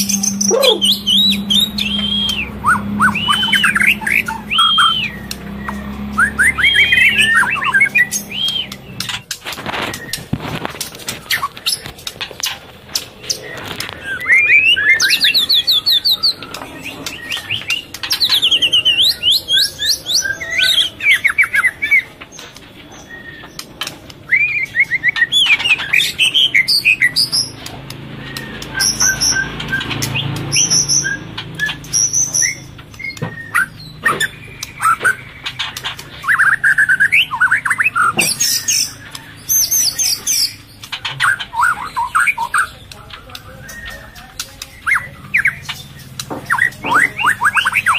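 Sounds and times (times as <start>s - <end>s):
songbird singing trills and whistles: 0.0s - 47.9s.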